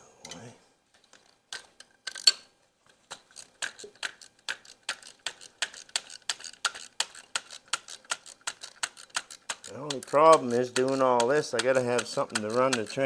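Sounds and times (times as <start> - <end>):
ratchet wrench clicking: 3.1 - 13.0.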